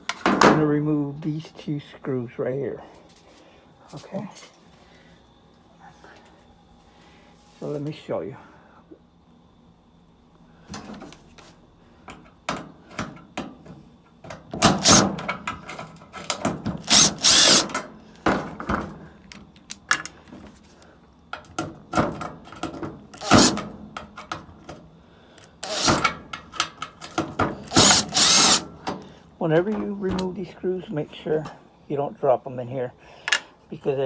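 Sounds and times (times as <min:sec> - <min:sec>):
power drill driving screws: 0:14.7 - 0:15.1, 0:16.8 - 0:17.8, 0:23.2 - 0:23.6, 0:25.6 - 0:26.1, 0:27.6 - 0:28.6
screws and panel clicking: 0:14.7 - 0:15.1, 0:16.2 - 0:17.8, 0:25.6 - 0:28.6.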